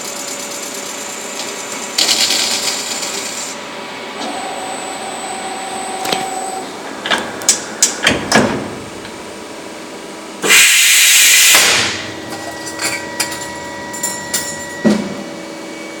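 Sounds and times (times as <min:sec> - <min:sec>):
loud hiss: 0:10.4 - 0:12.1
metal-spinning machine humming: 0:11.6 - 0:16.0.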